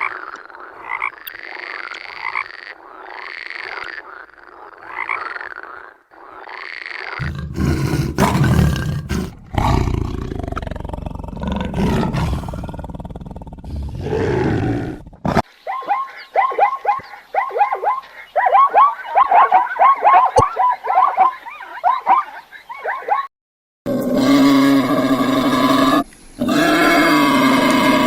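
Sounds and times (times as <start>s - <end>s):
animal roaring: 7.2s - 15.4s, 23.9s - 28.0s
animal chirping calls: 15.6s - 23.3s.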